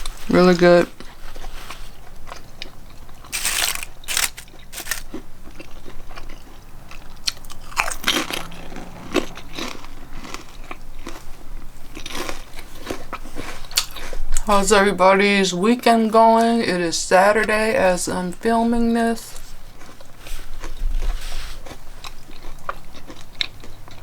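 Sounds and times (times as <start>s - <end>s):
person chewing crunchy food: 1.0s - 14.2s, 19.7s - 24.0s.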